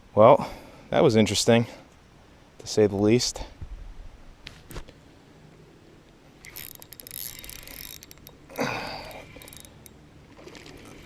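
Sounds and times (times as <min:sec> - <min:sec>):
fishing reel clicking: 0:06.4 - 0:10.0.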